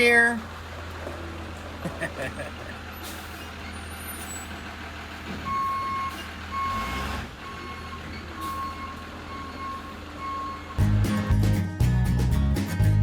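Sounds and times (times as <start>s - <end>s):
vehicle reversing beeper: 5.4s - 10.8s
low engine rumble: 7.4s - 13.0s.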